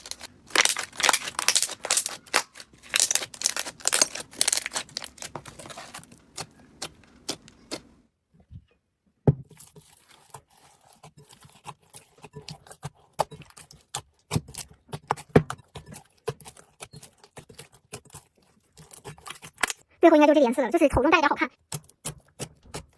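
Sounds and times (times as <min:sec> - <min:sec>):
crunchy slime crackling: 0:00.0 - 0:08.0.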